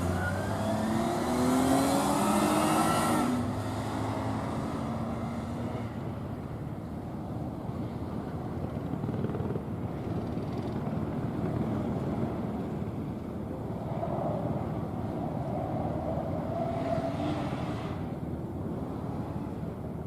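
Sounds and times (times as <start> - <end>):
car engine revving: 0.0 - 6.0.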